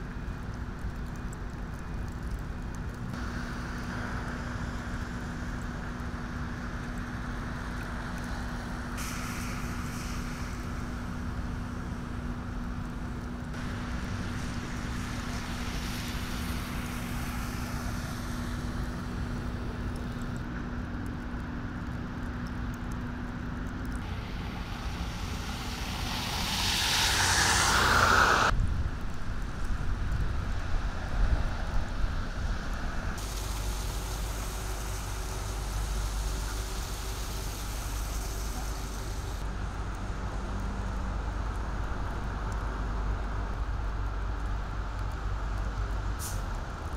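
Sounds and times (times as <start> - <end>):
road traffic noise: 0.0 - 46.9
vehicle passing close: 24.0 - 28.6.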